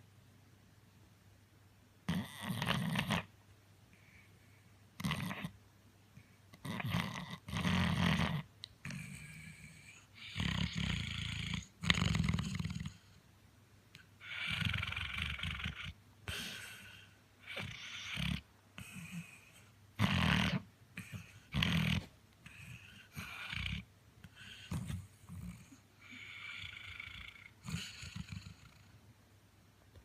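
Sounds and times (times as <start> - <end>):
dog snoring: 2.0 - 3.3, 5.0 - 5.6, 6.2 - 13.2, 14.2 - 28.9.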